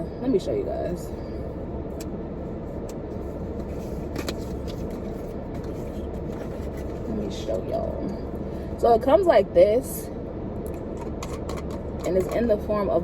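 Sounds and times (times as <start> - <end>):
car cabin rumble: 0.0 - 13.0.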